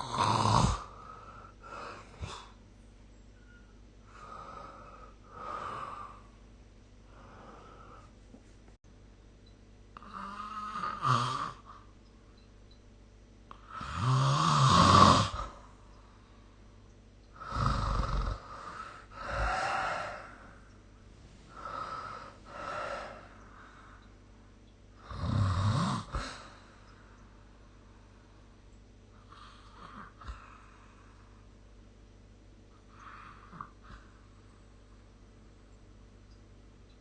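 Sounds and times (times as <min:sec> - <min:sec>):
person snoring: 0:00.0 - 0:02.6, 0:10.0 - 0:11.7, 0:13.6 - 0:15.6, 0:17.4 - 0:20.6, 0:21.5 - 0:23.4, 0:25.0 - 0:26.6.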